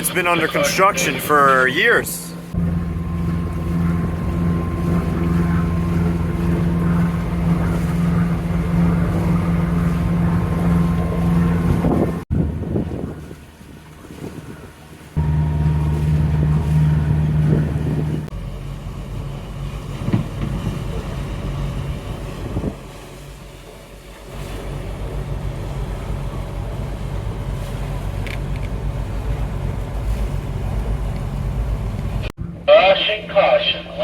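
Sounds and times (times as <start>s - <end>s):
boat engine running: 0.0s - 34.0s
loud steady low tone: 0.3s - 11.7s, 15.2s - 18.6s
wind on microphone: 2.8s - 18.3s, 19.9s - 23.0s.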